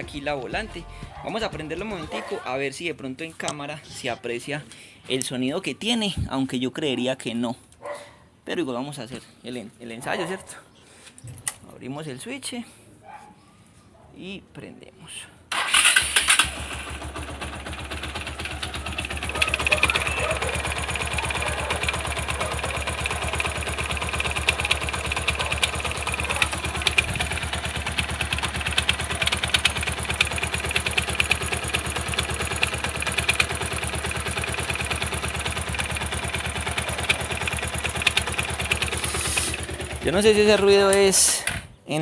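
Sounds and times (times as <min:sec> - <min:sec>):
motorcycle engine idling: 0:00.0 - 0:02.4, 0:15.6 - 0:41.6.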